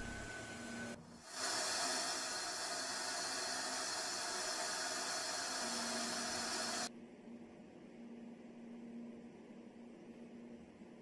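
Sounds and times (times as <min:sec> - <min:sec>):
air venting hiss: 0:01.2 - 0:06.9.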